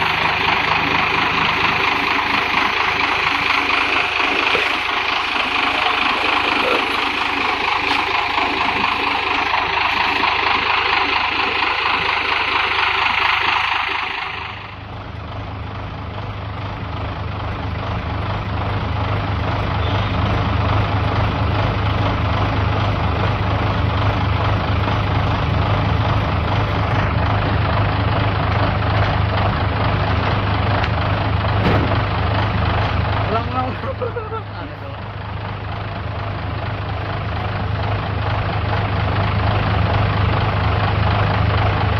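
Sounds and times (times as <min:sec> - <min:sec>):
vehicle engine idling: 0:00.0 - 0:41.9.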